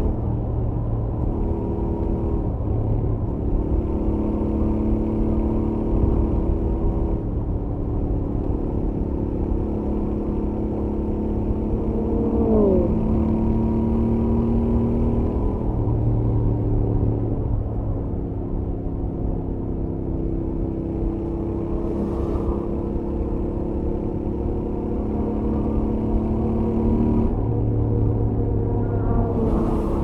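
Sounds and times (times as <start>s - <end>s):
wind rumble on microphone: 0.0s - 30.0s
motorcycle engine cruising: 3.4s - 15.6s
falling tone sweep: 27.8s - 30.0s.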